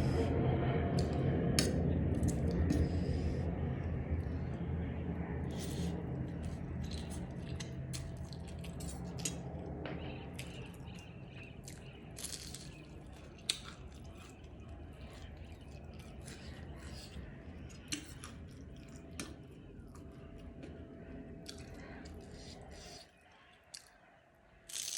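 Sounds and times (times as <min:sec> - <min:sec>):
chewing and crunching: 0:00.0 - 0:24.9
wet mouth clicks and smacks: 0:06.8 - 0:09.5, 0:17.8 - 0:19.5.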